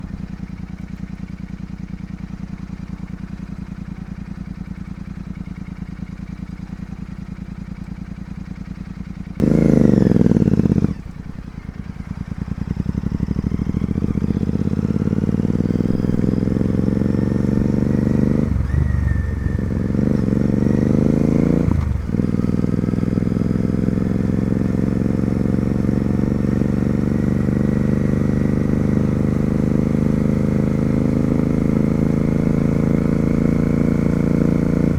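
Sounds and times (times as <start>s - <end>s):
motorcycle engine idling and revving: 0.0s - 34.9s
motorcycle accelerating: 8.8s - 34.9s.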